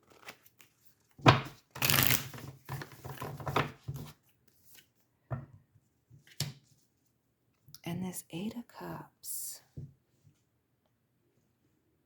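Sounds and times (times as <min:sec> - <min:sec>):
cards being shuffled: 0:00.0 - 0:00.7, 0:01.4 - 0:03.6.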